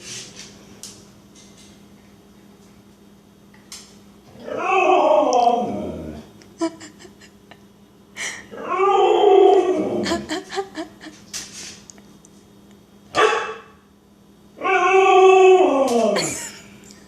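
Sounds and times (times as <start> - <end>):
husky howling calls: 4.4 - 6.2, 8.6 - 10.1, 14.6 - 16.2
dog yip: 13.2 - 13.7.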